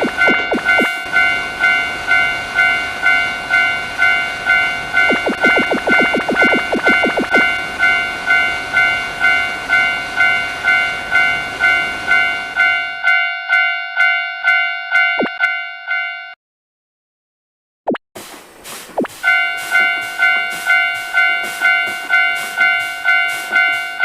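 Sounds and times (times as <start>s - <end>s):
rumble of passing train: 0.0s - 14.6s, 18.2s - 24.0s
level-crossing warning bell ringing: 0.0s - 16.4s, 19.2s - 24.0s
train wheels clattering over rail joints: 18.3s - 24.0s.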